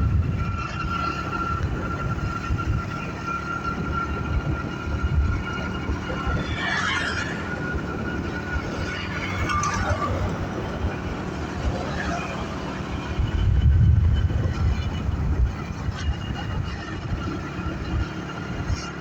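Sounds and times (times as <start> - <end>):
moving vehicle rumbling: 0.0 - 19.0.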